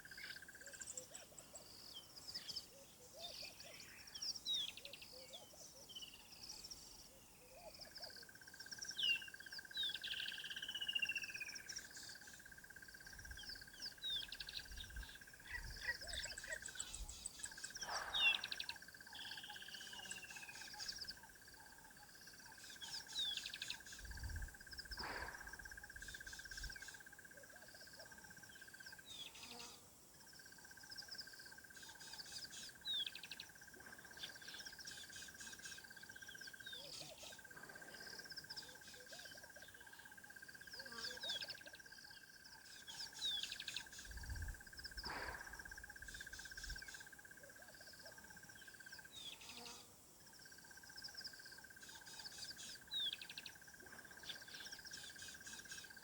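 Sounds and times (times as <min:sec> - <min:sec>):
birds chirping: 0:13.2 - 0:21.1.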